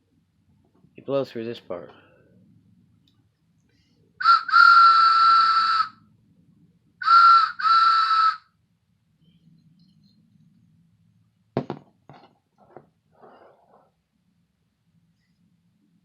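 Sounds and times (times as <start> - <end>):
toy train whistle toots: 4.2 - 5.9, 7.0 - 8.4
sharp knock: 11.6 - 11.9.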